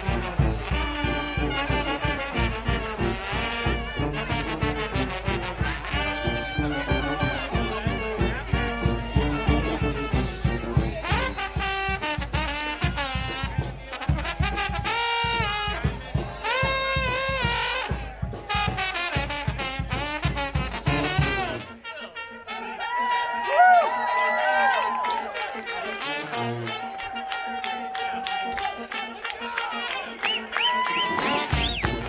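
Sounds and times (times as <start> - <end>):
drums keeping a beat: 0.0 - 21.8, 31.1 - 32.0
brass band playing: 0.0 - 32.0.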